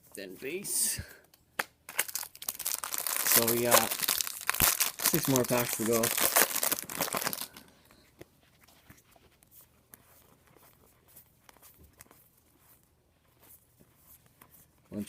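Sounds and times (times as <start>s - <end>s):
cards clicking and rustling: 1.6s - 7.7s
foil wrapper crinkling and tearing: 1.8s - 7.8s.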